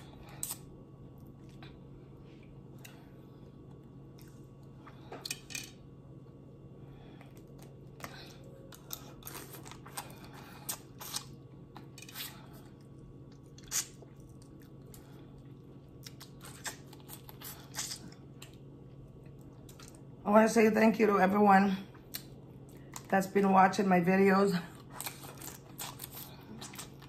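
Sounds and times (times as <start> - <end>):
faint low hum: 0.0 - 27.0
chewing with wet smacks: 7.2 - 12.0, 12.6 - 20.2, 24.8 - 27.0.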